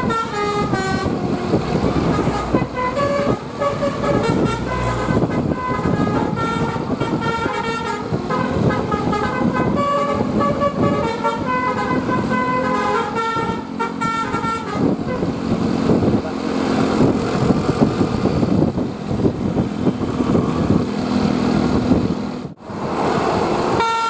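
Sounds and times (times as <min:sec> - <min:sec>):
musical bus horn tune: 0:00.0 - 0:15.4, 0:23.7 - 0:24.0.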